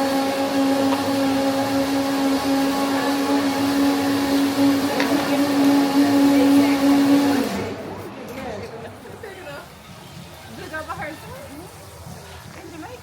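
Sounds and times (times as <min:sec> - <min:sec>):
electric blender running: 0:00.0 - 0:08.0.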